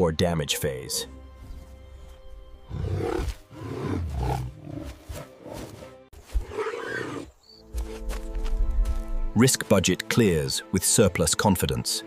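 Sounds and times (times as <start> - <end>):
background music: 0.0 - 12.0
animal growling and snarling: 2.7 - 7.3.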